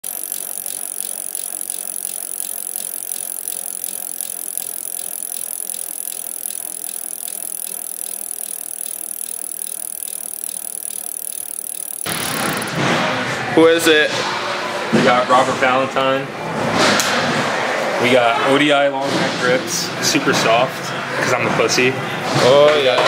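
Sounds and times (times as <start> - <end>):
bike hub clicking: 0.0 - 12.7.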